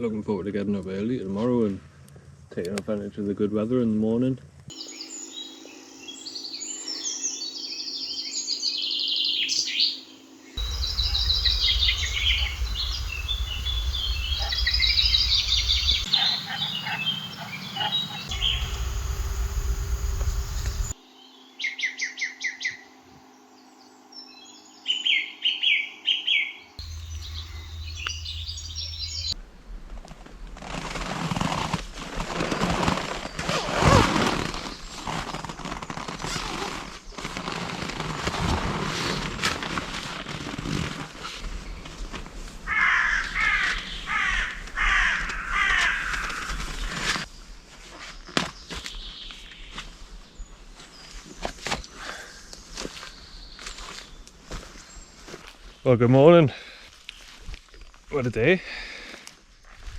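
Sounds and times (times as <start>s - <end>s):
songbirds singing: 4.7s - 29.4s
wind rumble on microphone: 10.6s - 20.9s
dense crackling noise: 10.6s - 21.0s, 26.8s - 29.4s.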